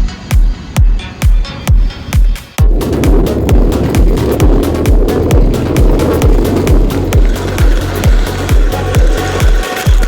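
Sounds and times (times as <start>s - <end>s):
crisp hi-hats: 0.0s - 10.0s
kick drum: 0.0s - 10.0s
buzzing synth: 2.6s - 10.0s.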